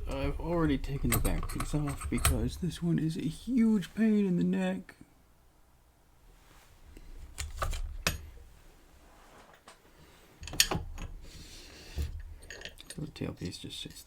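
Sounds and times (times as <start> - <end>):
low handling rumble: 0.0 - 4.0
small metal clicks and clinks: 12.4 - 14.0.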